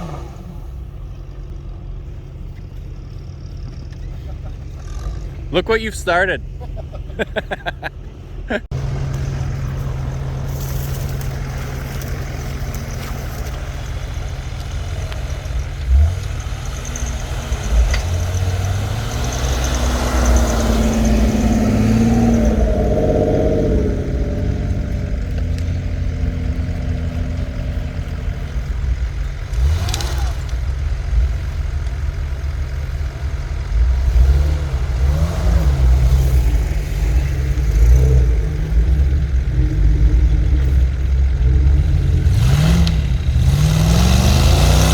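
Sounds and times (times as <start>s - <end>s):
engine revving under load: 0.0s - 0.9s, 8.6s - 44.9s.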